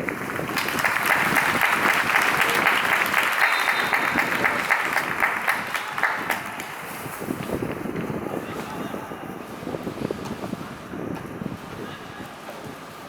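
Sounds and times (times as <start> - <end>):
stadium crowd applauding: 0.0 - 8.6.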